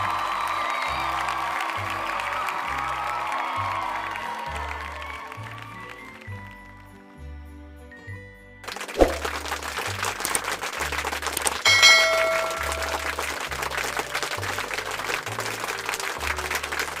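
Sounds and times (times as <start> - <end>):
bell-like ding: 11.7 - 13.2.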